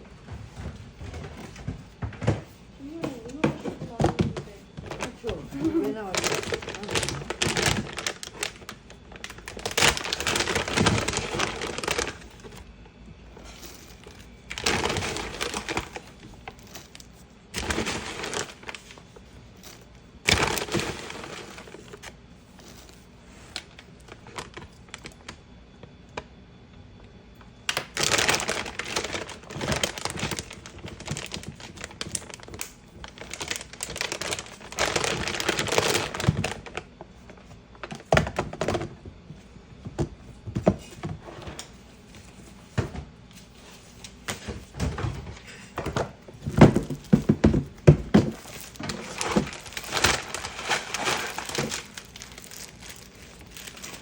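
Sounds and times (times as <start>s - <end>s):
dried herbs rustling and crackling: 4.5s - 12.6s, 48.2s - 54.0s.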